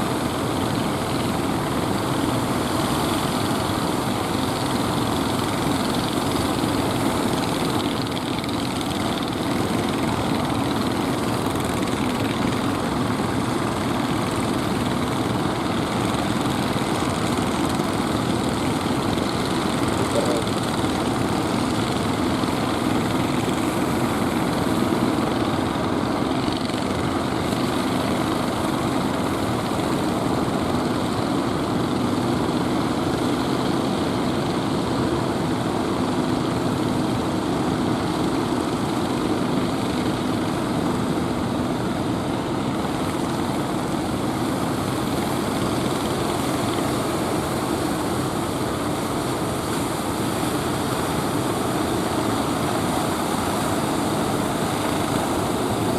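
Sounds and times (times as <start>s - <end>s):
boat motor humming: 4.8s - 25.8s.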